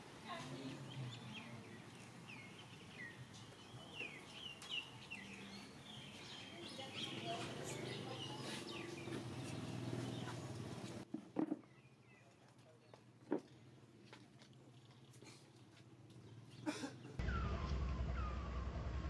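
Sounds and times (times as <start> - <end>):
birds chirping: 0.2 - 11.0.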